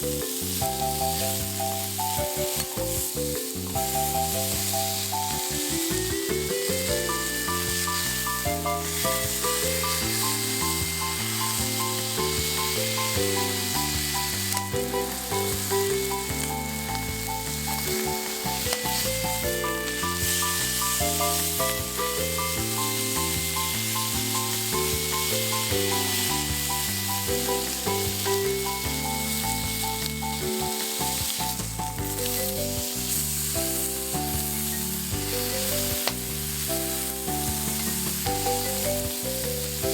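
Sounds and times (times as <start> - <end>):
background music with bass line: 0.0 - 39.9
food sizzling in a frying pan: 0.0 - 39.9.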